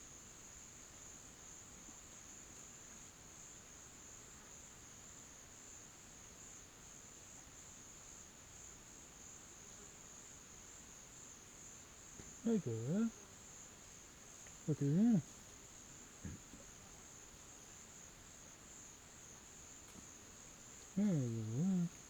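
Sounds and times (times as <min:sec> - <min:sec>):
crickets trilling: 0:08.2 - 0:22.0.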